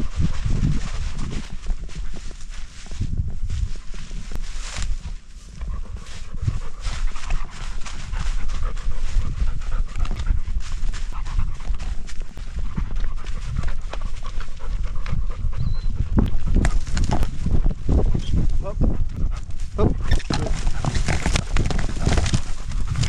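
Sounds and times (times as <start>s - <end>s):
dog panting: 5.6s - 16.5s, 18.7s - 23.0s.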